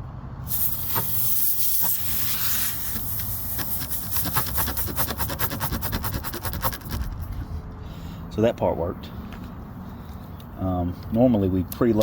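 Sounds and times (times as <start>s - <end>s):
air hissing from tire: 0.4s - 6.0s.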